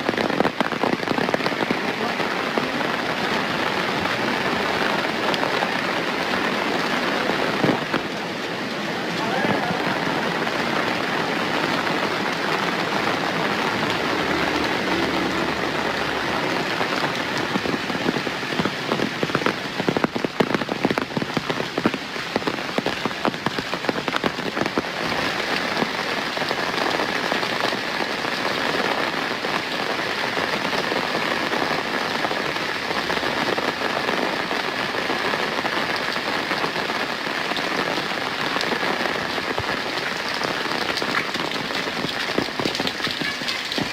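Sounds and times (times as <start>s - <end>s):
rain pattering: 0.0s - 43.9s.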